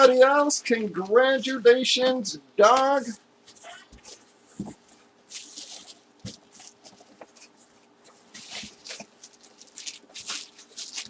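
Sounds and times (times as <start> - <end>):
rustling: 3.5 - 11.0.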